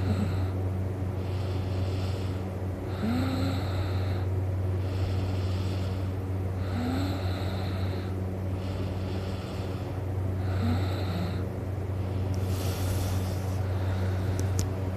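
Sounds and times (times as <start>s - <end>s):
man snoring: 0.0s - 0.6s, 1.3s - 11.5s
low hum: 0.0s - 14.9s.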